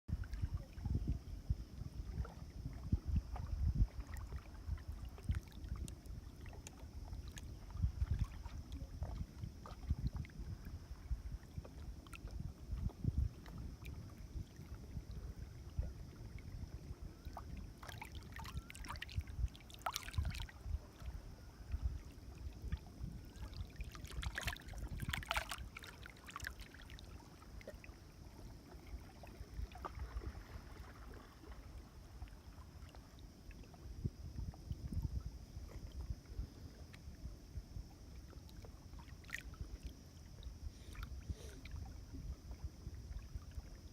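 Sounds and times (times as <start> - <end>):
wind buffeting microphone: 0.1 - 6.3, 6.9 - 25.5, 34.0 - 37.9
water lapping and splashing: 0.1 - 43.9.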